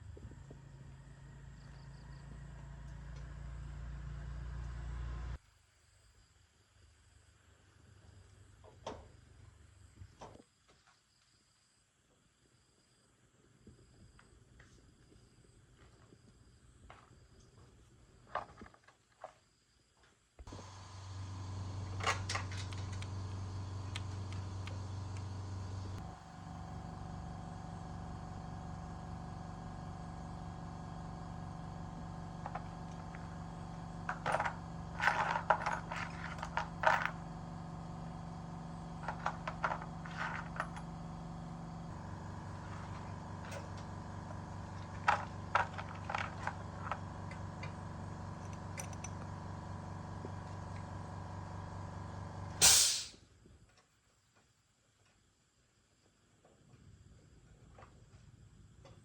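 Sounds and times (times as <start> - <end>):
steady mechanical hum: 20.5 - 53.7
metallic clinks and rattles: 48.4 - 49.2.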